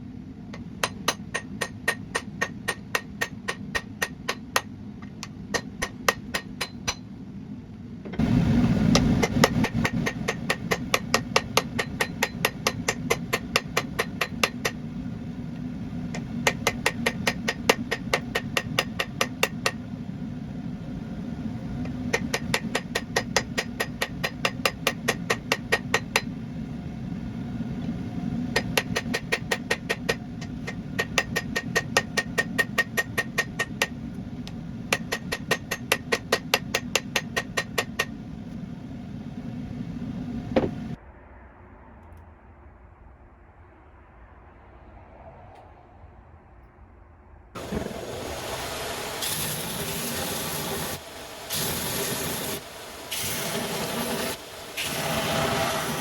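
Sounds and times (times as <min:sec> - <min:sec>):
hammer striking steel on anvil: 0:00.6 - 0:07.1, 0:08.9 - 0:14.8, 0:16.1 - 0:19.9, 0:21.8 - 0:26.4, 0:28.5 - 0:34.0, 0:34.9 - 0:38.2.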